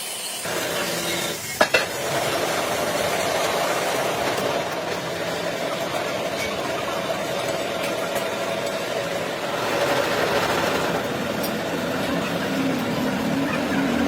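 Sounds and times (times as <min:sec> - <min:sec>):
engine running: 0:00.4 - 0:14.0.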